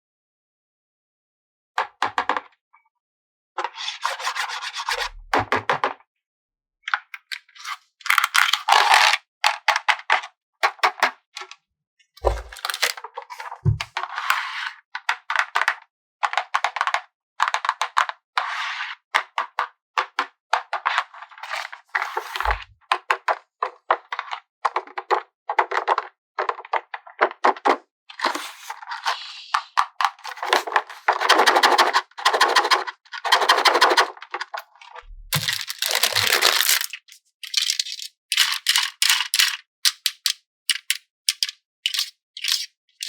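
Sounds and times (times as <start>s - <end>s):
packaging crinkling: 12.4s - 13.0s, 35.4s - 38.9s.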